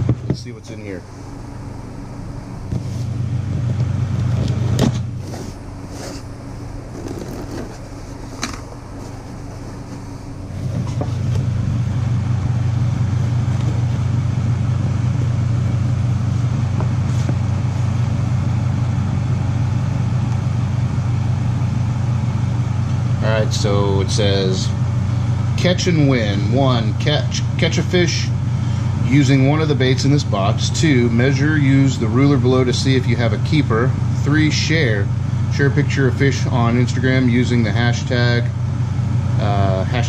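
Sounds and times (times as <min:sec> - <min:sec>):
steady low hum: 0:00.0 - 0:40.0
cardboard box being handled: 0:06.9 - 0:11.4.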